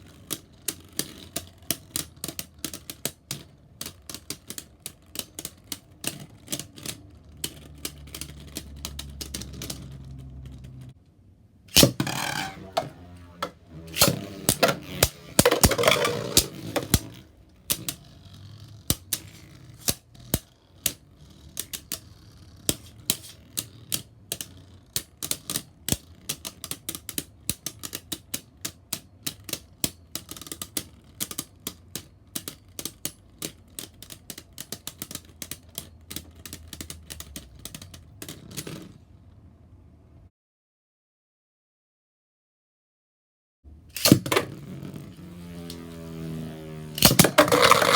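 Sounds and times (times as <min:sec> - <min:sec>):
spinning tops clashing: 0:11.7 - 0:18.0.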